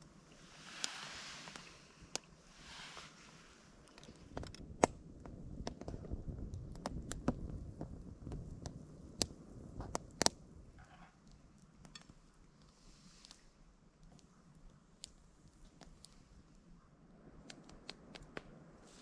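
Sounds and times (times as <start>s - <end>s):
low rumble of handling: 0.0s - 19.0s.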